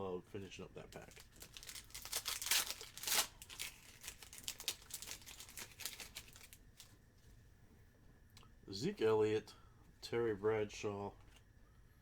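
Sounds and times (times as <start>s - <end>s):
plastic wrapper crinkling: 0.9s - 7.0s.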